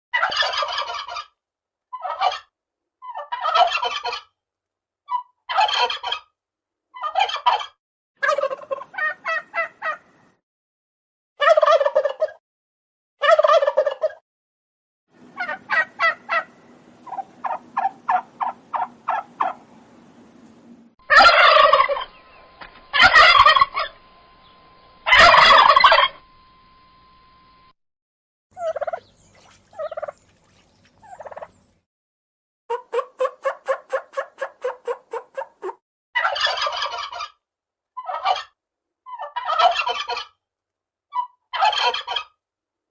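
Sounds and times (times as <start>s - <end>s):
turkey gobbling: 0.2s - 4.3s, 5.1s - 6.3s, 6.9s - 10.1s, 11.4s - 12.4s, 13.2s - 14.2s, 15.4s - 19.6s, 21.0s - 24.0s, 25.0s - 26.2s, 28.6s - 30.2s, 30.9s - 31.6s, 32.7s - 37.4s, 38.0s - 40.4s, 41.2s - 42.4s.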